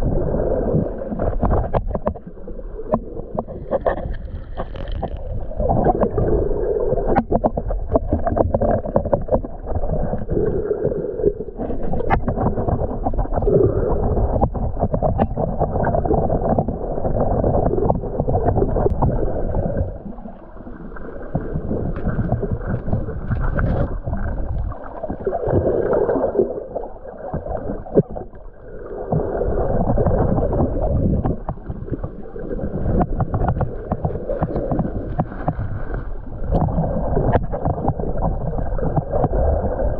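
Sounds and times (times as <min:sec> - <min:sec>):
underwater water rushing and gurgling: 0:00.0 - 0:39.9.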